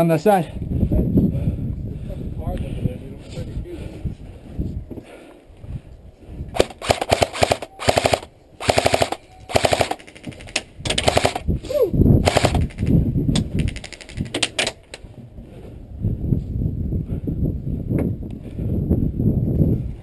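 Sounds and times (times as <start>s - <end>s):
airsoft guns firing bursts: 6.6s - 11.5s, 12.2s - 12.9s, 13.6s - 14.4s.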